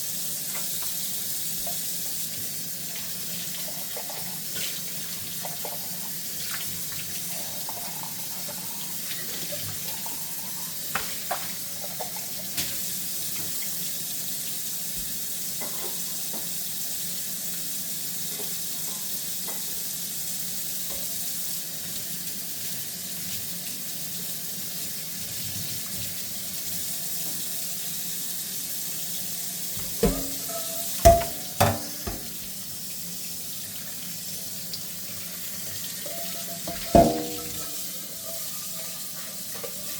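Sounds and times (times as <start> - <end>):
dishes clinking: 29.8 - 32.4, 36.1 - 38.0
dishes knocking and clattering: 29.8 - 32.5, 36.7 - 37.9
tap running into sink: 29.8 - 32.6, 36.6 - 37.9.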